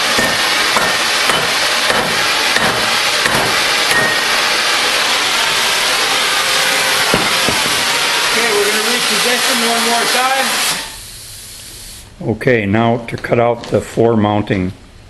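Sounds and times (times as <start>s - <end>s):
cutting torch hissing: 0.0s - 12.2s
torch pops: 7.0s - 8.4s.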